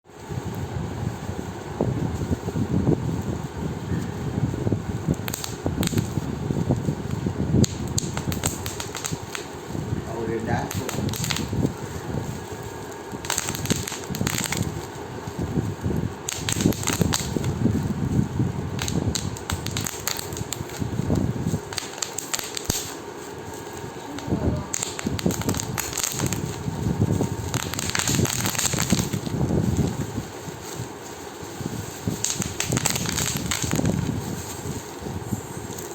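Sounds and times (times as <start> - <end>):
bubble wrap popping: 0.2 - 35.9
plastic sheet crinkling: 0.2 - 35.9.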